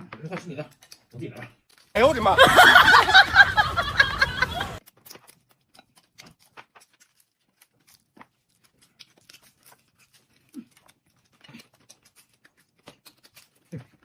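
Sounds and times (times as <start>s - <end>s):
chewing mouth noises: 4.8s - 14.0s.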